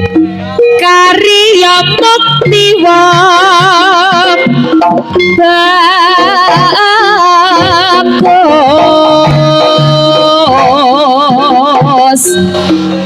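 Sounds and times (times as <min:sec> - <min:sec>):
high singing voice with vibrato: 0:00.7 - 0:12.5.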